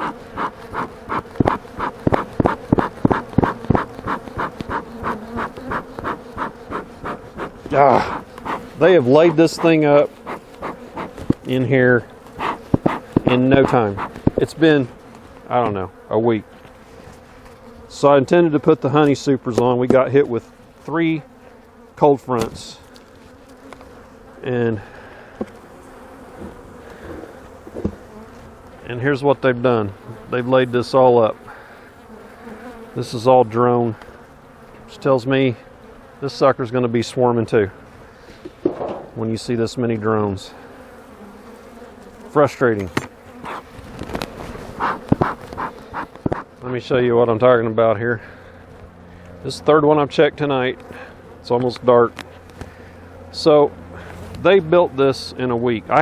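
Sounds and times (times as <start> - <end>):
rhythmic puffing: 0.0 - 11.4, 12.4 - 14.4
light knocks of hive parts: 0.0 - 15.5, 22.4 - 24.0, 25.4 - 25.7, 26.3 - 28.8, 42.0 - 46.6, 51.6 - 52.8
honey bees humming: 0.0 - 56.0
sharp knocks: 12.4 - 14.4, 38.6 - 39.2.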